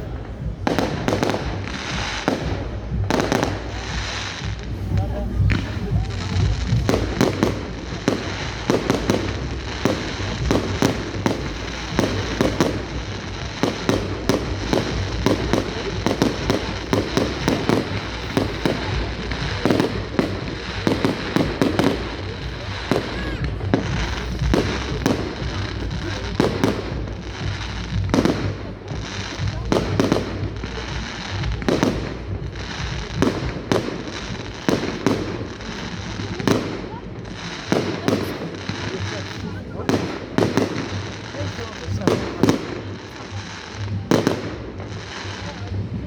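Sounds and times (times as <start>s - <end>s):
low rumble: 0.0s - 36.4s
fireworks bangs: 0.0s - 46.0s.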